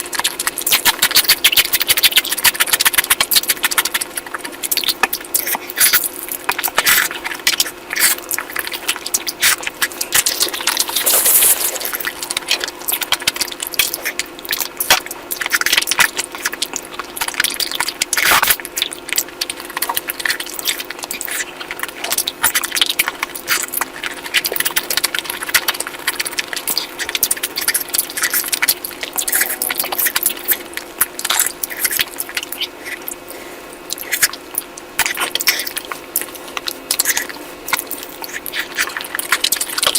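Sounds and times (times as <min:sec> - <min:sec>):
wet chewing smacks: 0:00.0 - 0:39.9.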